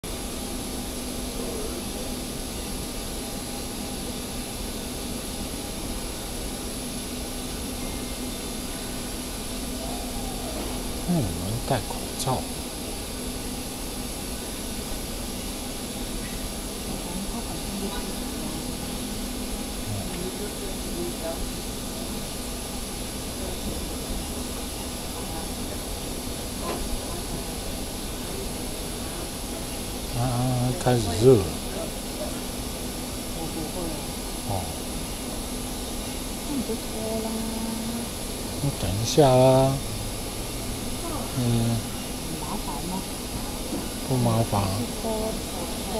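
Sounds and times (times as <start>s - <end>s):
faint high whine: 0.0s - 45.9s
jet aircraft drone: 0.1s - 45.9s
rushing air and machinery hum: 37.5s - 45.9s.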